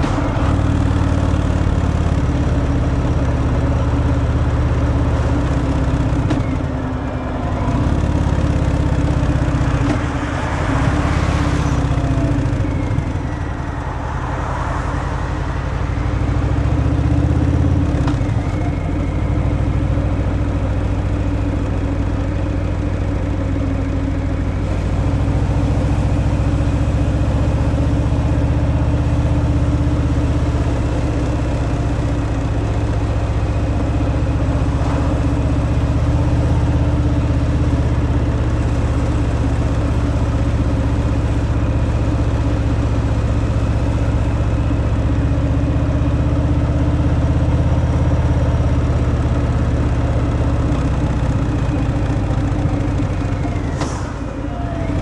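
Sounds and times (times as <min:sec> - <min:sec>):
motorcycle engine rumbling: 0:00.0 - 0:55.0.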